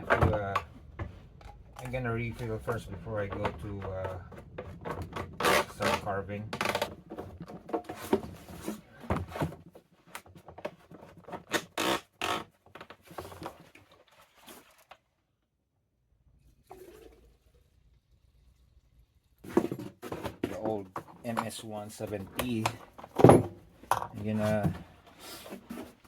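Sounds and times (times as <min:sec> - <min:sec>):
knocks and scrapes handling chainsaw: 0:00.0 - 0:14.0
liquid being poured: 0:16.6 - 0:18.9.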